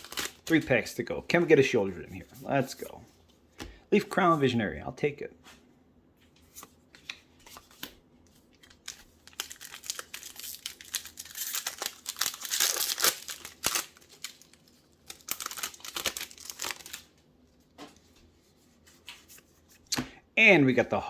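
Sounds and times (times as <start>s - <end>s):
foil wrapper tearing and crinkling: 0.0s - 0.6s, 8.6s - 17.1s.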